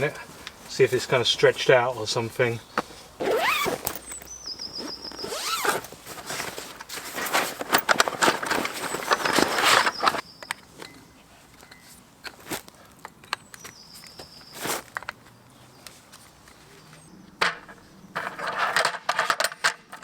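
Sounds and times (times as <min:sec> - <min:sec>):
rustling of gear: 0:00.1 - 0:17.1
zip being pulled: 0:03.2 - 0:06.0.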